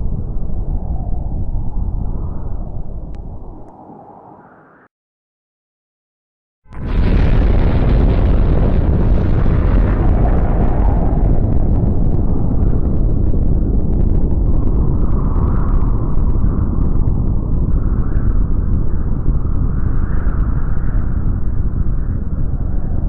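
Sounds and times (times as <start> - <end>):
explosion with deep rumble: 6.7 - 23.0
faint crackles: 6.7 - 23.0.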